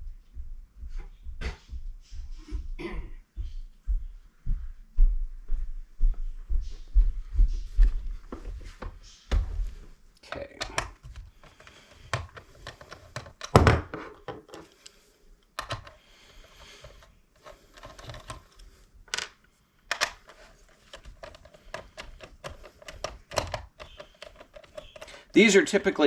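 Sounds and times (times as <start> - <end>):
small parts clicking and tapping: 10.2 - 13.6, 14.2 - 25.4.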